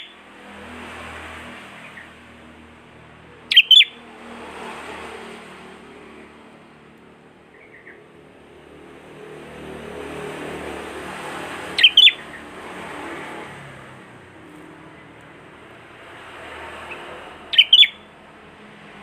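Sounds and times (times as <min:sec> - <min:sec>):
bird chirping high notes: 0:03.5 - 0:04.0, 0:11.8 - 0:12.3, 0:16.9 - 0:18.0.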